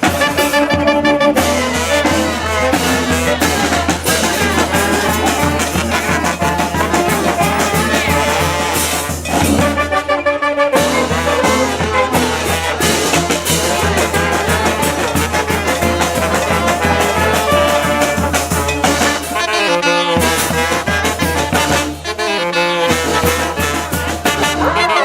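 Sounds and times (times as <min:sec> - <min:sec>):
brass band playing: 0:00.0 - 0:25.0
drum beat: 0:02.9 - 0:09.5.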